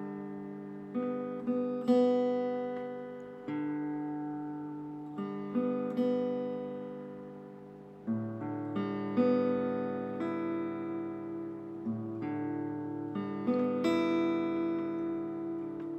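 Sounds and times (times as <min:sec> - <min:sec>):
acoustic guitar chords: 0:00.0 - 0:15.9.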